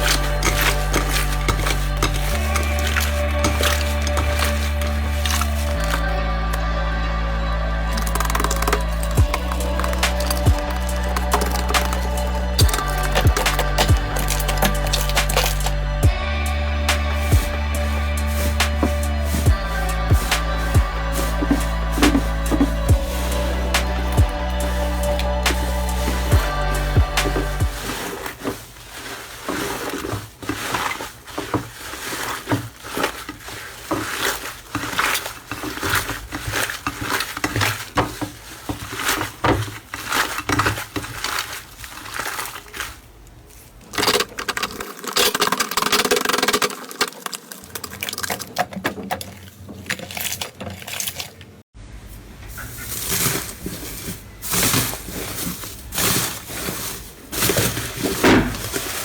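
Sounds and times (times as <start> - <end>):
slime crackling and popping: 0.0 - 6.6, 7.9 - 15.8.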